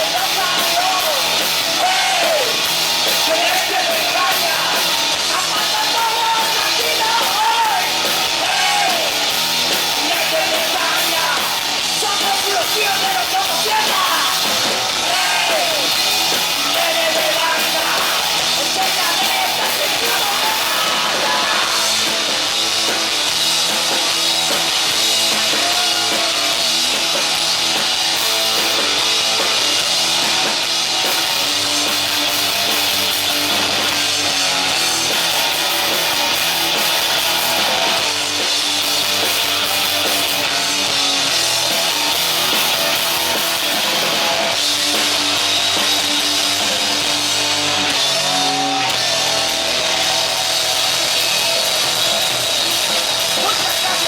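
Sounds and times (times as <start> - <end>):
drum kit: 0.0 - 54.0
electric guitars: 0.0 - 54.0
person singing: 16.6 - 22.1.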